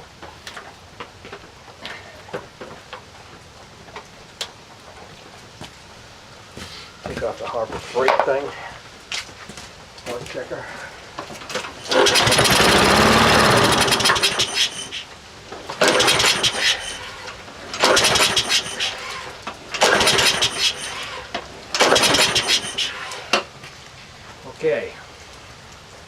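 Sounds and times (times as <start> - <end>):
lawnmower recoil cord pulls: 11.4 - 23.5
lawnmower engine running raggedly: 11.6 - 15.0, 15.6 - 23.3.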